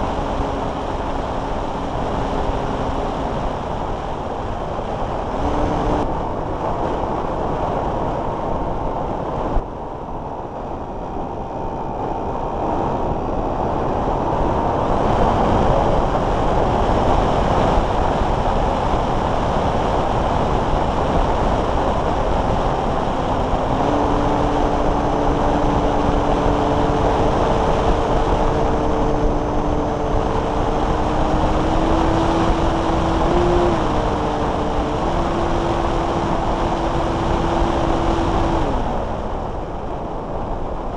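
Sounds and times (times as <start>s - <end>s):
electric motor whine: 0.0s - 6.2s, 22.6s - 39.4s
airflow rushing: 0.0s - 9.9s, 10.9s - 40.4s.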